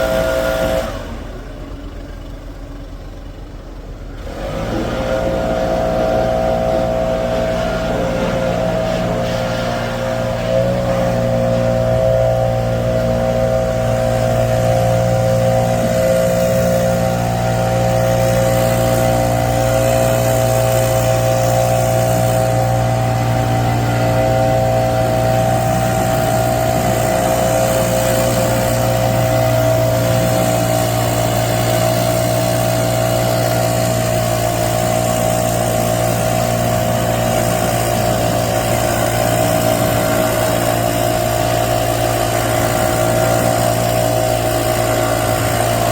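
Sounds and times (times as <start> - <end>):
engine humming with whine: 0.0 - 45.9.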